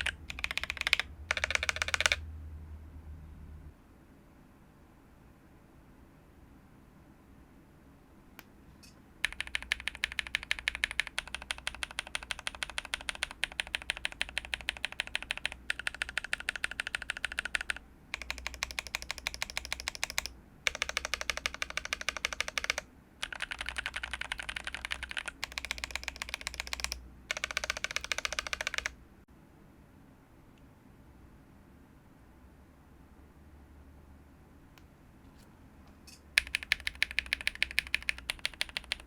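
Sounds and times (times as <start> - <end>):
fast typing on mechanical keyboard: 0.0 - 2.2, 9.2 - 29.0, 36.4 - 39.0.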